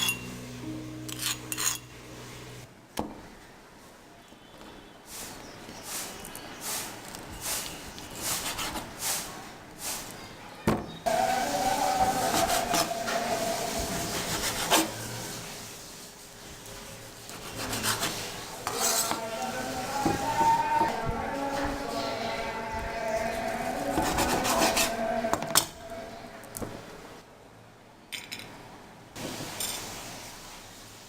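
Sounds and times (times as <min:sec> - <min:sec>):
utensil scraping in a pot: 0:01.0 - 0:02.5, 0:11.1 - 0:15.7, 0:17.2 - 0:26.0.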